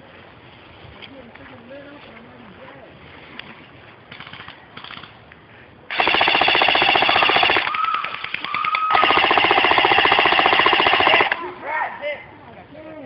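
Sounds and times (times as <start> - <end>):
airsoft gun full-auto rattle: 4.1 - 5.2, 5.9 - 11.4.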